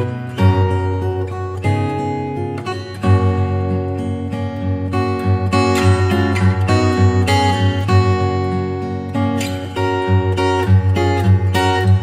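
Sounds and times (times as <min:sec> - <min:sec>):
strummed acoustic guitar: 0:00.0 - 0:12.0.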